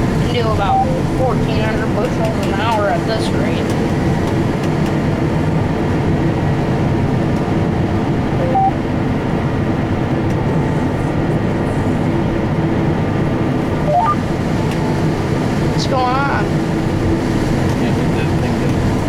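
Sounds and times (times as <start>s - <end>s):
combine harvester engine drone: 0.0s - 19.0s
two-note electronic beep: 0.6s - 1.0s, 8.4s - 8.8s, 13.8s - 14.2s.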